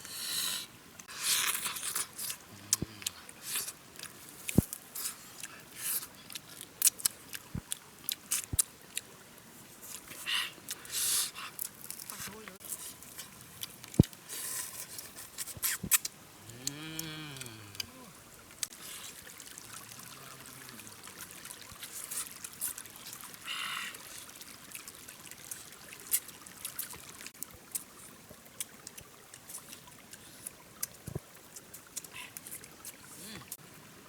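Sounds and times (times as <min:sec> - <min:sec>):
low drawn-out call: 0:19.7 - 0:21.4.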